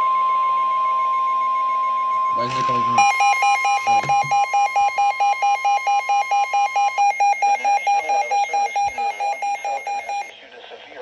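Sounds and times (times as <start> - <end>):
high electronic beep pulsing: 2.2 - 10.3
steady alarm tone: 2.2 - 10.3.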